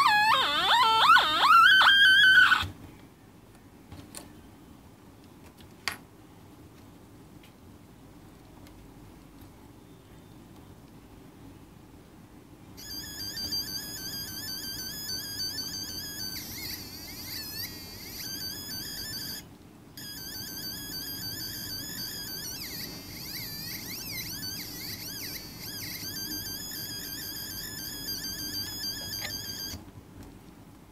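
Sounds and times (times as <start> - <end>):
buzzy electronic chirping tone: 0.0 - 2.6, 12.8 - 19.4, 20.0 - 29.8.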